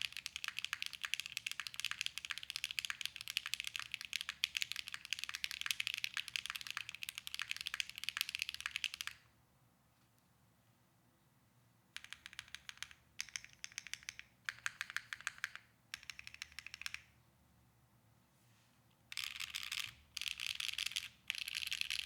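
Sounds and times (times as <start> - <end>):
mechanical keyboard typing: 0.0 - 9.2, 12.0 - 17.0, 19.1 - 22.0.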